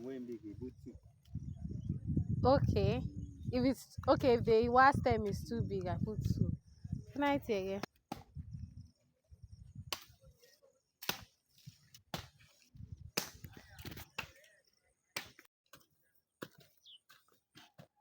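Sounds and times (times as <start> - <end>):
sharp chopping knocks: 11.0 - 11.3.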